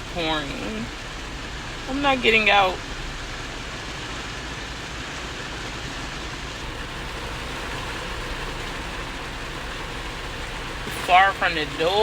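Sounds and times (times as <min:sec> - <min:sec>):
heavy rain on a car: 0:00.0 - 0:12.0
low steady hum: 0:00.0 - 0:12.0.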